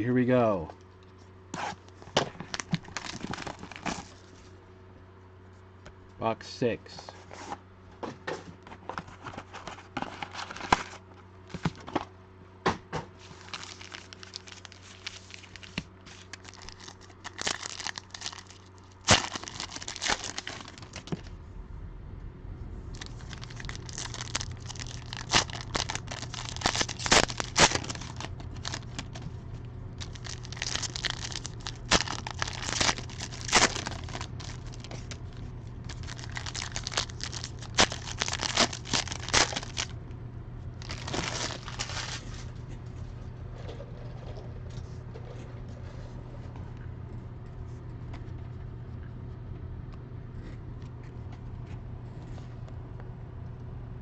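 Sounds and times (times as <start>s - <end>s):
plastic wrapping crinkling and tearing: 2.4s - 4.3s, 13.2s - 21.3s, 22.9s - 29.2s, 30.0s - 39.9s, 40.8s - 42.5s
low hum: 13.2s - 54.0s.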